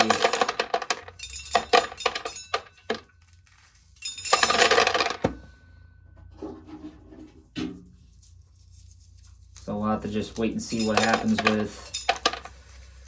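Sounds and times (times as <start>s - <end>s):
corn kernels clattering on metal: 0.0s - 3.1s, 4.0s - 5.4s, 9.6s - 13.0s.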